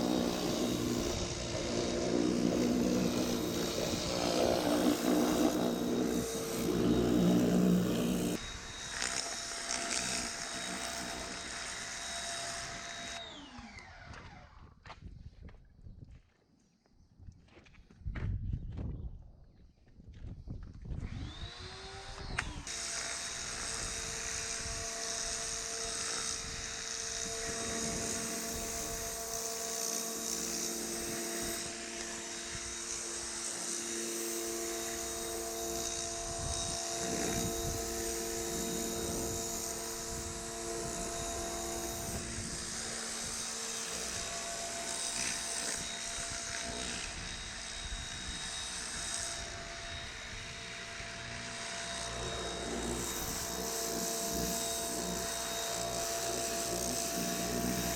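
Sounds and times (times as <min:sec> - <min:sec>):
pressure washer running: 0:00.0 - 0:08.5, 0:51.6 - 0:57.9.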